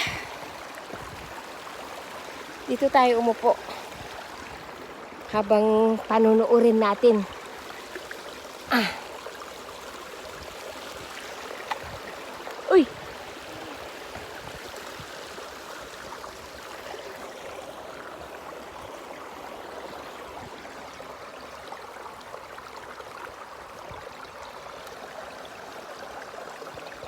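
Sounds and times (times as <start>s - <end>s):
water rushing: 0.0s - 27.0s.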